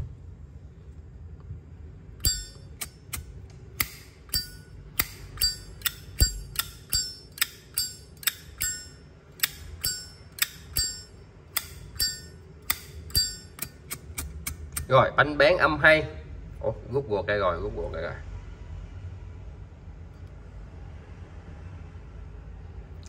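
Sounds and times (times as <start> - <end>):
lighter lid clicking open and shut: 11.6 - 14.9.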